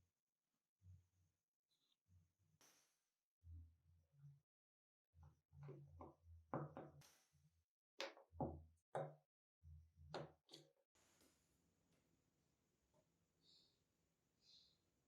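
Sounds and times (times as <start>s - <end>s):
tools knocking on workbench: 6.6s - 7.0s.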